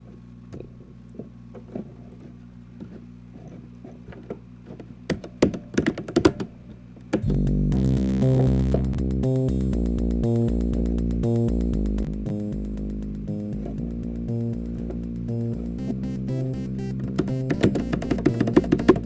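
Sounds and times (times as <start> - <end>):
background music: 7.2 - 19.0.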